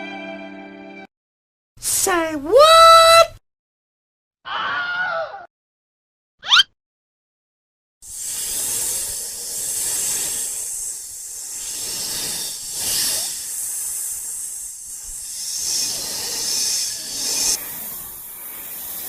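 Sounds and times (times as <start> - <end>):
high-pitched hissing: 8.0 - 19.0.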